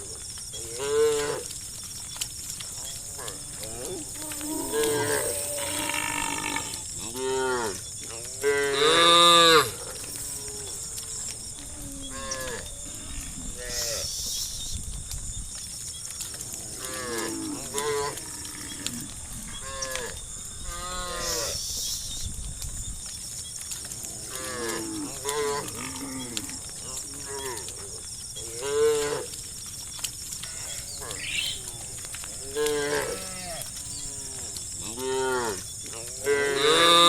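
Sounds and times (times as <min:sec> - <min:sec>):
cows mooing: 0:02.9 - 0:07.8, 0:30.4 - 0:35.6.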